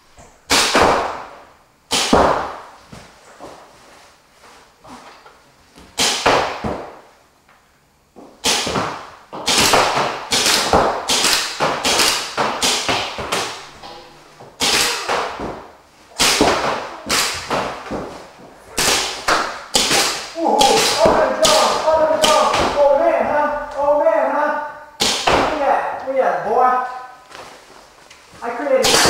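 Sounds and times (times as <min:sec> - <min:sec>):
paintball markers firing: 0:01.9 - 0:02.6, 0:08.4 - 0:13.6, 0:14.6 - 0:15.4, 0:16.2 - 0:17.8, 0:18.8 - 0:22.8.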